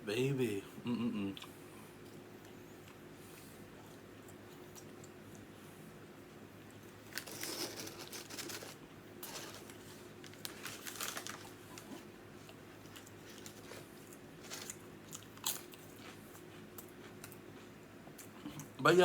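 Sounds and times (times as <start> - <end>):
paper wrapper crinkling: 7.1 - 12.0, 13.2 - 14.8.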